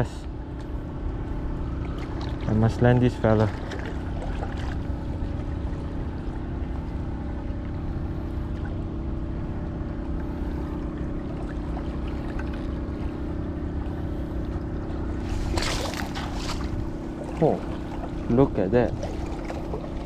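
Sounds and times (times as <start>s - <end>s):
boat engine humming: 0.0s - 20.0s.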